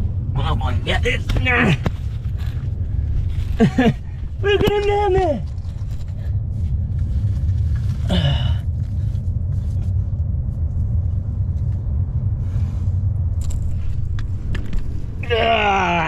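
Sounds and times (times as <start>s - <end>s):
wind buffeting microphone: 8.7s - 16.0s.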